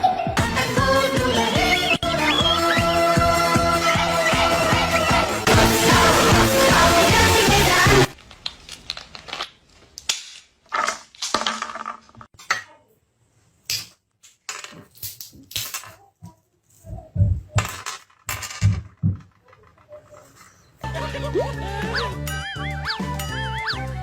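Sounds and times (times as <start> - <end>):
hard objects clattering: 8.3 - 12.7, 17.5 - 20.8.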